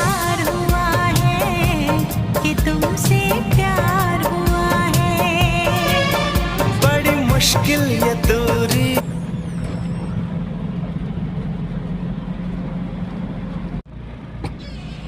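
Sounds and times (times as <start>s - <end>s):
song with singing: 0.0s - 9.0s
road noise: 0.0s - 15.0s
vehicle engine rumbling: 0.0s - 15.0s.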